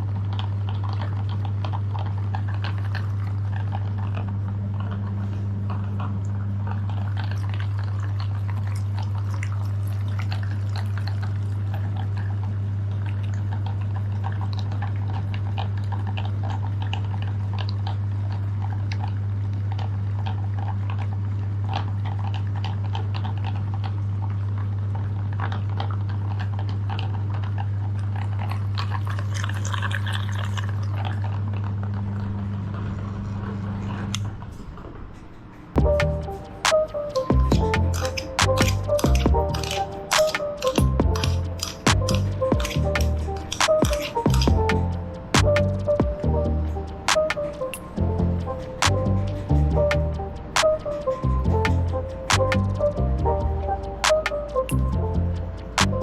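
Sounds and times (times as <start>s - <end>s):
crackling and crunching: 0.0s - 33.3s, 35.8s - 53.0s
meat grinder motor hum: 35.8s - 50.6s.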